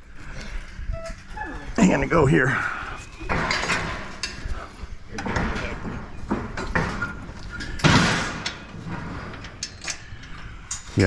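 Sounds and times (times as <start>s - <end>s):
metal knocks: 5.1s - 10.4s.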